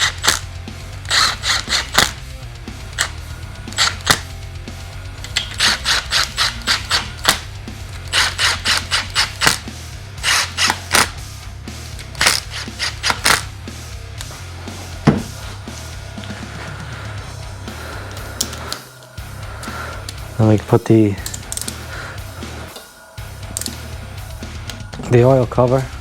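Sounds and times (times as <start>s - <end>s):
ratchet wrench clicking: 0.0s - 11.3s, 11.9s - 14.4s, 17.3s - 20.3s, 21.2s - 24.9s
background music: 0.0s - 26.0s.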